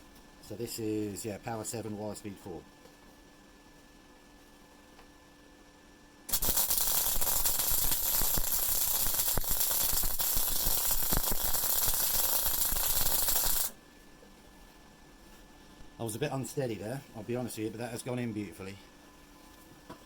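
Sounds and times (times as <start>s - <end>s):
welding arc crackling: 6.3s - 13.8s.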